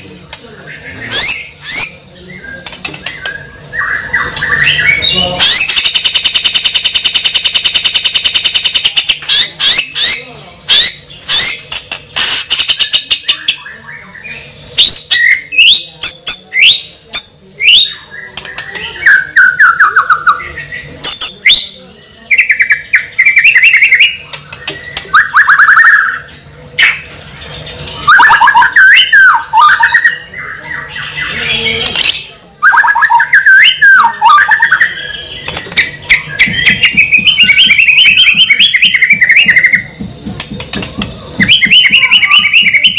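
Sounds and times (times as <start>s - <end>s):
bird squawking and calling: 3.0s - 17.0s, 22.6s - 40.0s, 40.8s - 42.9s.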